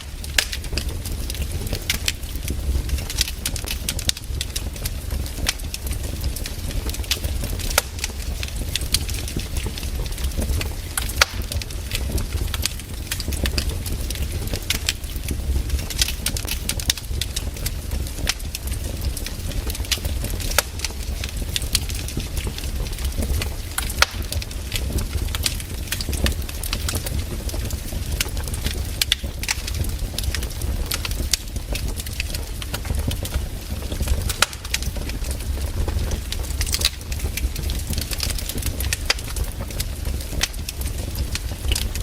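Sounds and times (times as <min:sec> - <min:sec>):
wood fire crackling: 0:00.0 - 0:42.0.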